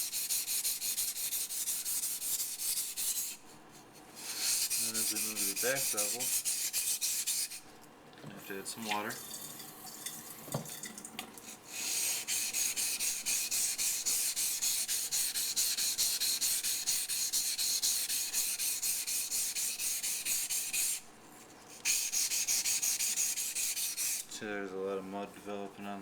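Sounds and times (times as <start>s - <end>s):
knife scraping on whetstone: 4.2s - 7.6s.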